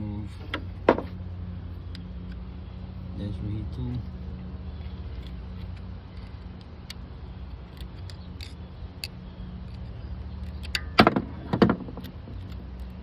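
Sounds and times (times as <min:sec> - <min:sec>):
tools and metal parts clattering: 0:07.6 - 0:13.0.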